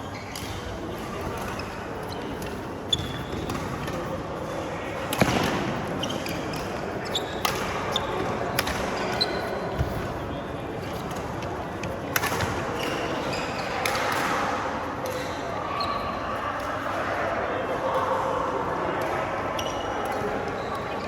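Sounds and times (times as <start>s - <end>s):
murmur of voices: 0.0s - 21.0s
shoe squeaks: 2.9s - 3.4s, 6.0s - 8.1s
rackets striking shuttlecock: 7.4s - 7.9s, 8.5s - 9.0s.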